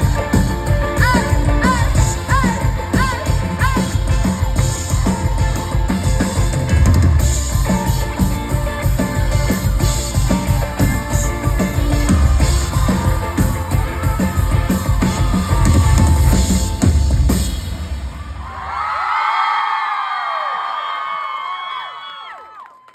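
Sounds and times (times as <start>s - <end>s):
live band music: 0.0s - 18.3s.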